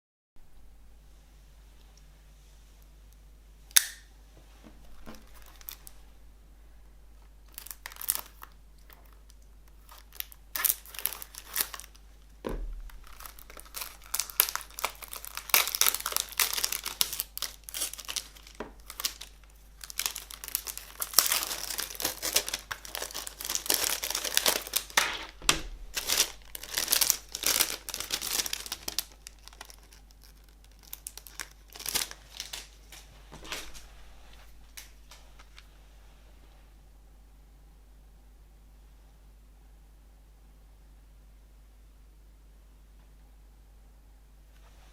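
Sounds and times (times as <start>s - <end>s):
plastic shrink wrap crinkling: 4.7s - 6.1s, 7.2s - 35.7s.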